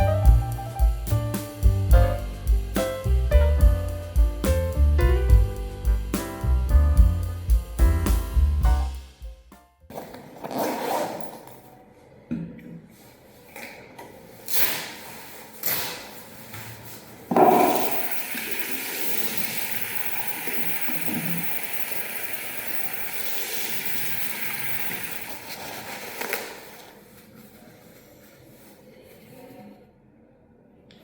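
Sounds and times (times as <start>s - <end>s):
water running: 17.2s - 26.9s.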